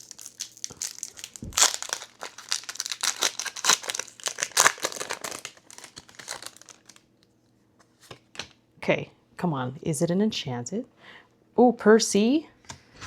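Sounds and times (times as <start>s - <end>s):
packaging crinkling: 0.0s - 7.1s
packaging ripping: 0.0s - 7.1s.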